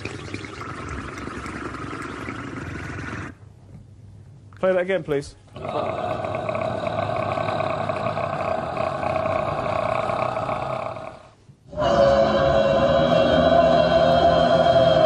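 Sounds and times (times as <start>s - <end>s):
choir imitating a car engine: 5.6s - 15.0s.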